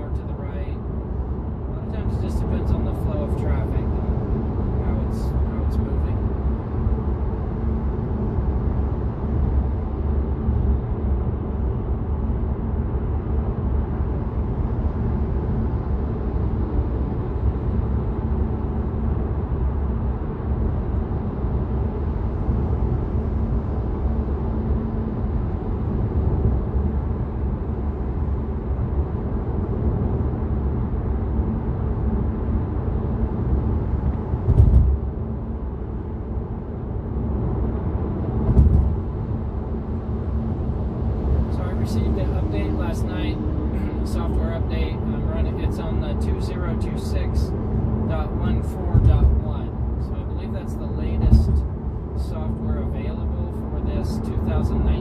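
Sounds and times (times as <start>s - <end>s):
faint steady hum: 0.0s - 55.0s
wind noise: 6.1s - 42.8s, 48.8s - 50.1s, 51.1s - 52.3s
tyre and road rumble: 33.4s - 36.4s, 37.2s - 39.5s, 51.0s - 52.3s
brief thump: 34.5s - 35.0s, 38.4s - 39.0s, 51.2s - 51.7s.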